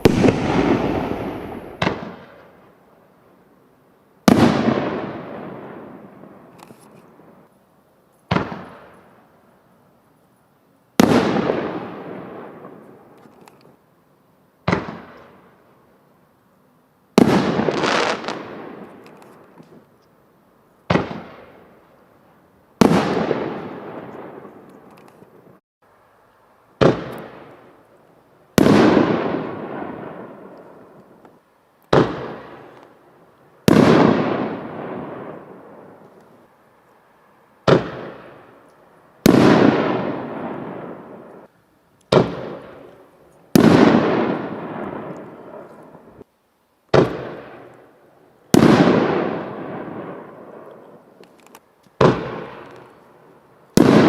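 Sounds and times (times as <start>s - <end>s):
fireworks bangs: 0.0s - 2.8s, 4.2s - 7.5s, 8.3s - 9.2s, 11.0s - 13.5s, 14.6s - 15.5s, 17.1s - 19.8s, 20.9s - 21.8s, 22.8s - 25.6s, 26.8s - 27.8s, 28.5s - 33.0s, 33.6s - 36.5s, 37.6s - 41.5s, 42.1s - 46.3s, 46.9s - 54.0s.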